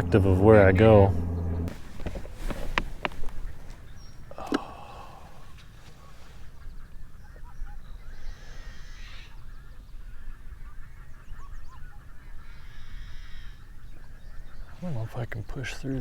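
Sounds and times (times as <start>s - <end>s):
steady low rumble: 0.0s - 5.6s
birds calling: 0.0s - 16.0s.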